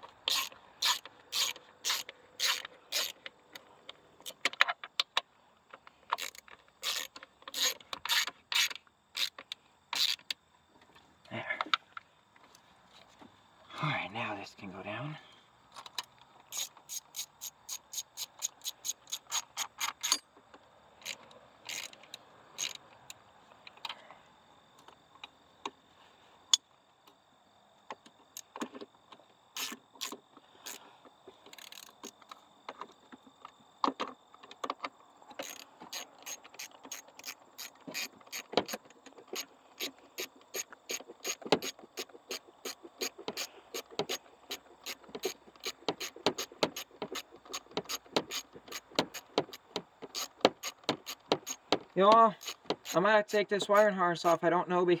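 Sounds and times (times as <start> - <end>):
ratchet wrench clicking: 0.2 - 3.3, 6.1 - 10.3, 16.5 - 20.2, 21.0 - 22.8, 29.6 - 30.8, 31.6 - 32.0, 35.4 - 51.7, 52.3 - 53.0.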